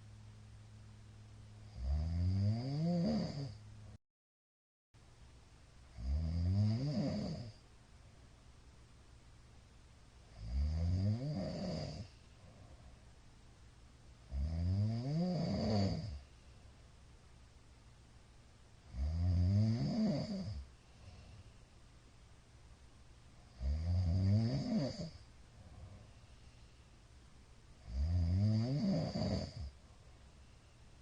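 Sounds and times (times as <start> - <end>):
man snoring: 1.7 - 3.6, 5.9 - 7.6, 10.3 - 12.1, 14.3 - 16.2, 18.9 - 20.7, 23.5 - 25.2, 27.8 - 29.7.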